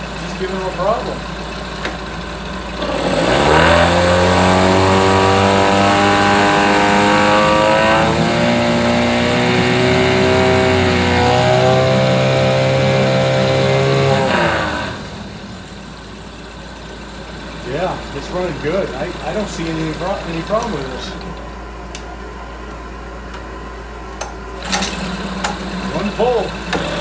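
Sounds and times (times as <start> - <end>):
outboard motor revving: 0.0 - 21.7, 24.6 - 27.0.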